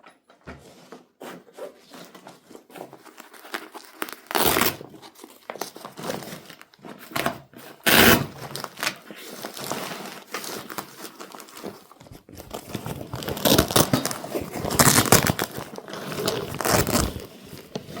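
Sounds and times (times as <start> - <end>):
paper or plastic wrapping rustling: 0.6 - 18.0
loud crackles or rips: 3.3 - 6.6, 7.8 - 18.0.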